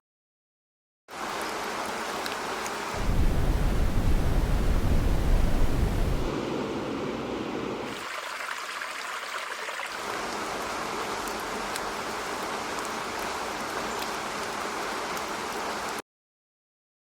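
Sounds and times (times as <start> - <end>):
running stream: 1.1 - 6.4, 7.8 - 16.0
rain: 1.1 - 16.0.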